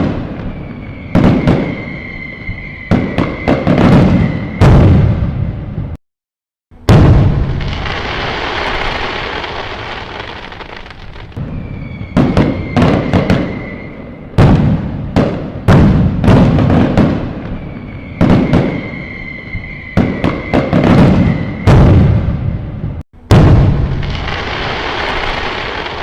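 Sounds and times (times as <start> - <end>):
fireworks bangs with echo: 0.0 - 6.0, 6.8 - 26.0
fireworks rumble: 0.0 - 6.0, 6.8 - 26.0
high steady whistle: 0.4 - 4.8, 11.4 - 14.4, 17.5 - 21.8.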